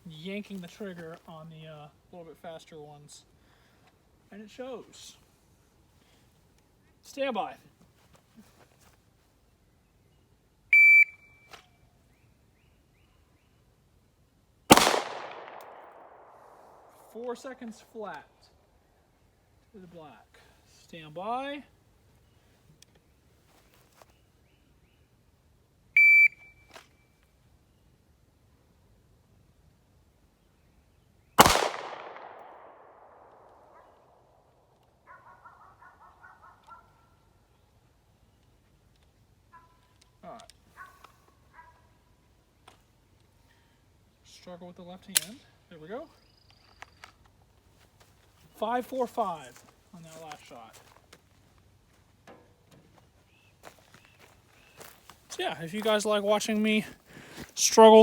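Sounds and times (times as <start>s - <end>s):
shot timer start beep: 10.8s - 11.3s, 26.0s - 26.5s
pistol shot with echo: 14.7s - 17.0s, 31.4s - 33.8s.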